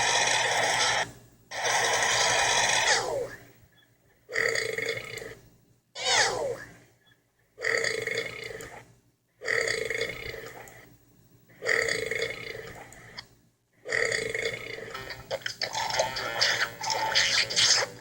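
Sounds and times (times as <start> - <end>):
person belching loudly: 15.4 - 17.9.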